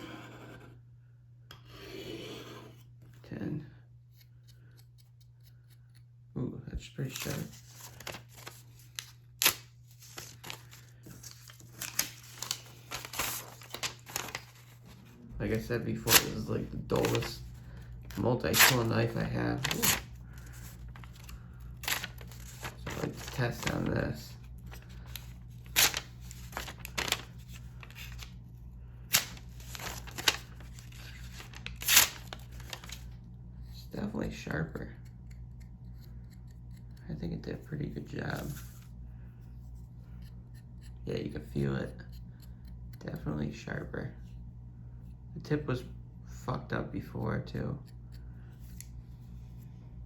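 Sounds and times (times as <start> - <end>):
knife slicing through paper: 7.1 - 15.0, 18.4 - 23.9, 24.7 - 28.3, 29.1 - 33.0.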